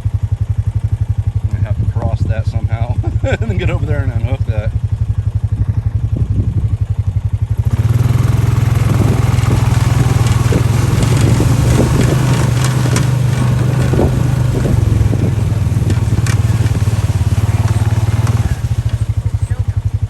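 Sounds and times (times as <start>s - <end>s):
motorbike engine idling: 0.0s - 20.0s
crackling: 7.7s - 20.0s.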